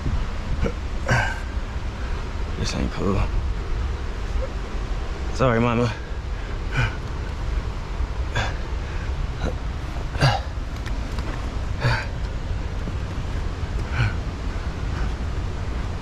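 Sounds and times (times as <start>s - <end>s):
steady low rumble: 0.0s - 16.0s
person grunting: 0.6s - 1.5s, 6.7s - 7.0s, 9.4s - 10.6s, 11.8s - 12.2s, 13.8s - 14.3s.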